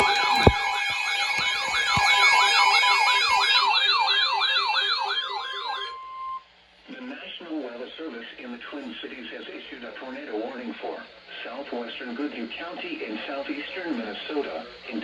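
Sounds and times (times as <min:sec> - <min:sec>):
electronic siren yelping: 0:00.0 - 0:06.4.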